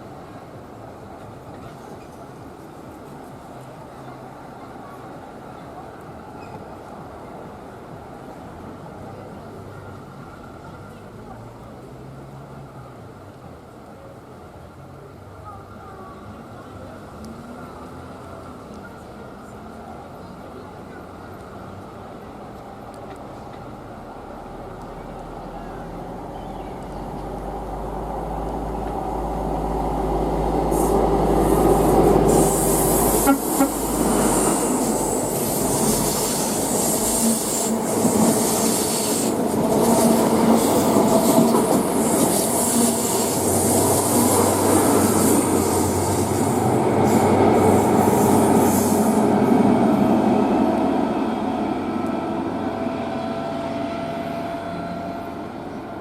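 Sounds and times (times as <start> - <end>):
train passing close by: 15.0 - 56.0.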